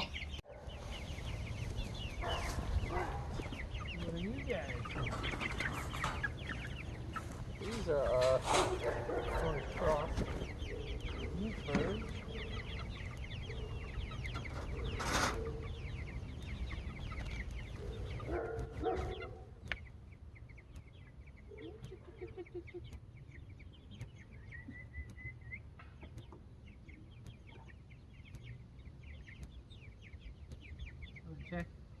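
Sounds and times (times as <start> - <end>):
chickens clucking: 0.0 - 32.0
chicks peeping: 0.0 - 32.0.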